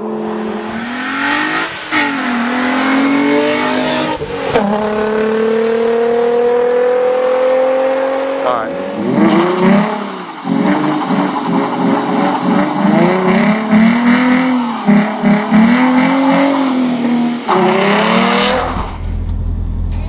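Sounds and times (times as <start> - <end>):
car exhaust revving: 0.0 - 20.0
deep low engine rumble: 18.4 - 20.0.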